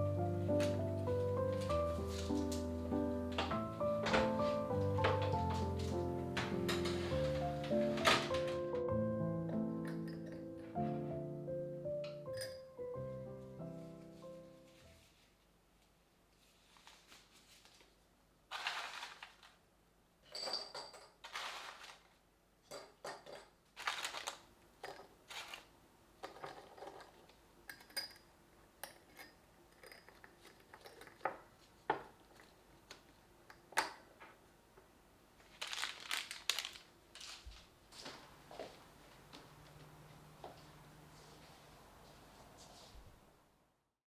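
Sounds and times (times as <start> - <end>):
knocks and clinks of objects: 9.8 - 10.8, 20.2 - 21.9
rustling: 13.8 - 19.6, 21.2 - 22.2, 25.2 - 25.8, 35.4 - 38.3.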